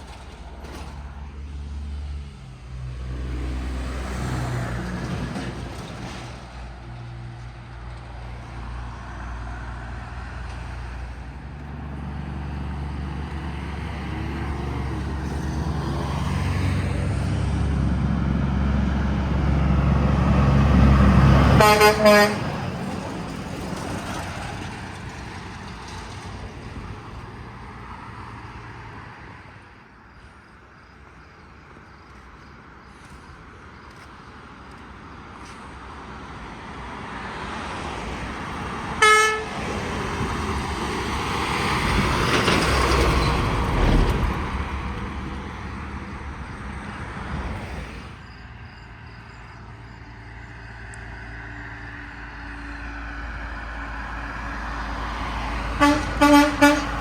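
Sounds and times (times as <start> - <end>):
roadside traffic: 0.0 - 57.0
large vehicle passing: 0.8 - 30.0, 36.7 - 57.0
vehicle horn toot: 21.6 - 22.6, 39.0 - 39.6, 55.8 - 57.0.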